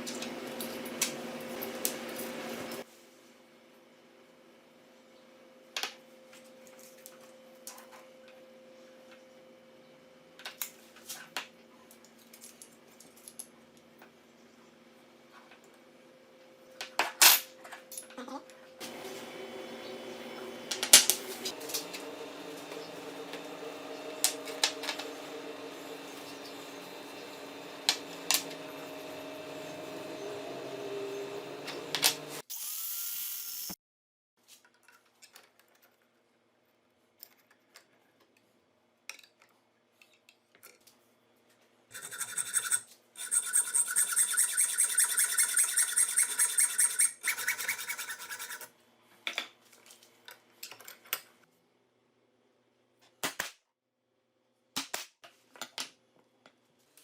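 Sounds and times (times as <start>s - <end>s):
buzzing power tool: 18.8s - 33.8s, 41.9s - 48.7s
power tool motor running: 18.8s - 33.8s, 41.9s - 48.7s.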